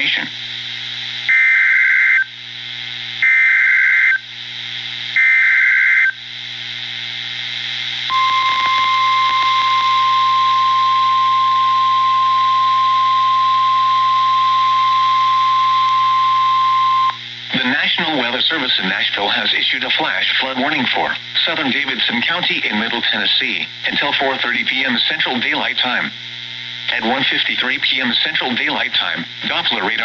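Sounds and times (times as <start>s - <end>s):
steady warning alarm tone: 1.3s - 2.3s, 3.2s - 4.2s, 5.2s - 6.2s, 8.1s - 17.2s.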